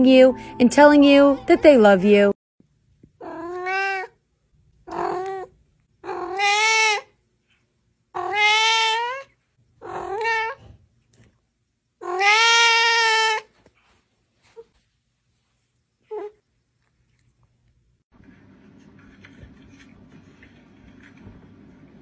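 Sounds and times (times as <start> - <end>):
cat meowing loudly: 6.1 - 7.1, 8.2 - 9.2, 12.0 - 13.5.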